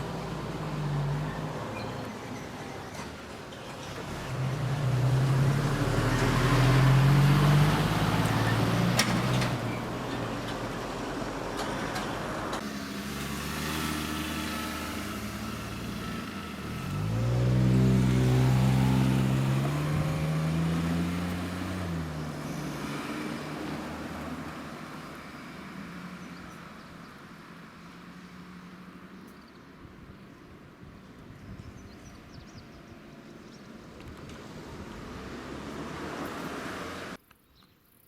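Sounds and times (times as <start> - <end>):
car engine: 0.0 - 29.1, 33.8 - 37.2
engine accelerating: 3.8 - 26.8, 34.0 - 37.2.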